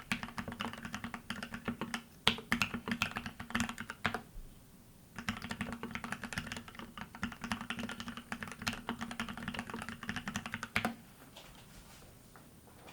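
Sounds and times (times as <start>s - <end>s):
fast mechanical keyboard typing: 0.0s - 4.2s, 5.2s - 11.0s.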